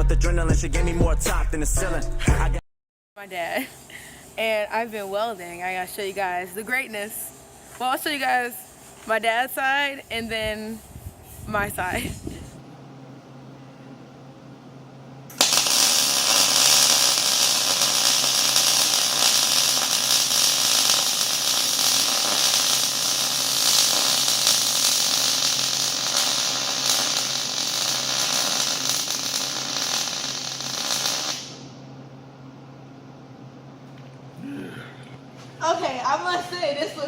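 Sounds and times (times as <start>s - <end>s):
welding arc crackling: 15.3s - 31.7s.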